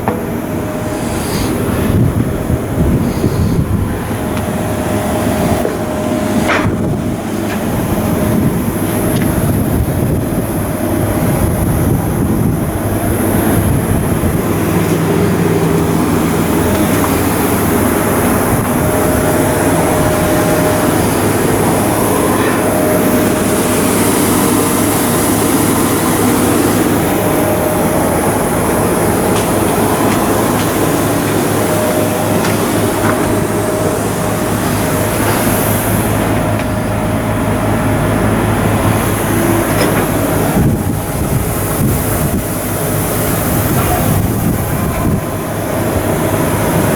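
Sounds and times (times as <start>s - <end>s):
faint machinery whine: 0.0s - 46.9s
machinery low hum: 0.0s - 46.9s.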